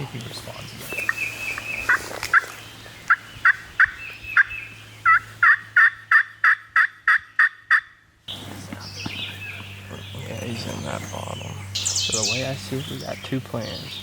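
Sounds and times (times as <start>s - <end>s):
turkey yelping: 1.7s - 2.5s, 3.1s - 8.0s.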